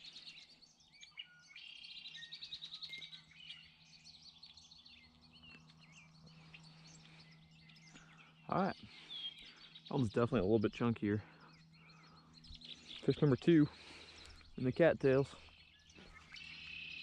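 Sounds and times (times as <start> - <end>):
birds chirping and singing: 0.0 - 17.0
faint low hum: 0.0 - 17.0.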